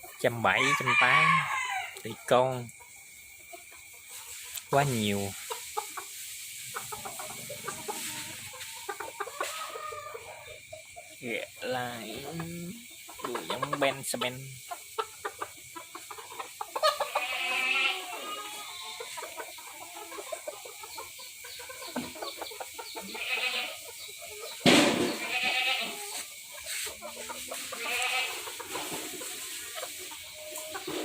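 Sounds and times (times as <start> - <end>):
chickens clucking and squawking: 0.0 - 31.0.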